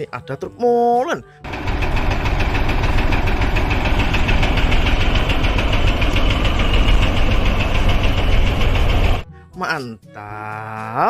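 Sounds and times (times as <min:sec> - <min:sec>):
toy truck engine rumble with rattle: 0:01.5 - 0:09.2.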